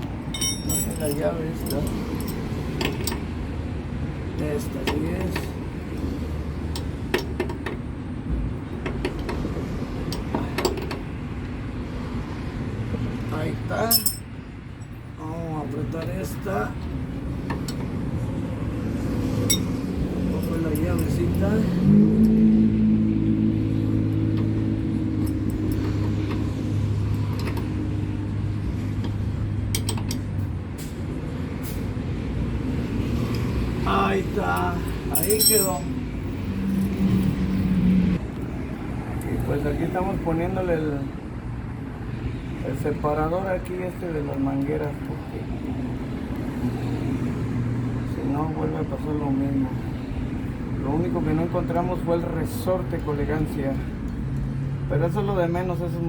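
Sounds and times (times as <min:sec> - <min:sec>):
wrench tapping on metal: 0:00.3 - 0:03.2, 0:13.9 - 0:14.3, 0:34.6 - 0:35.9
wrench clicking metallic: 0:35.1 - 0:35.9.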